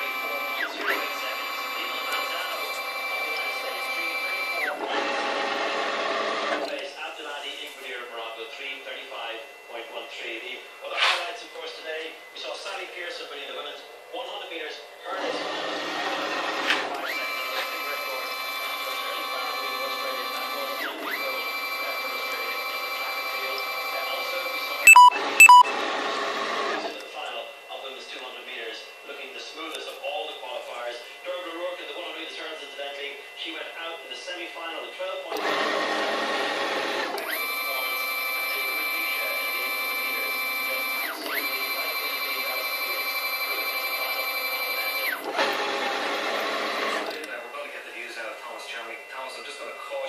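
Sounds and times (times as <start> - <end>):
short electronic beeps: 24.9 - 25.7.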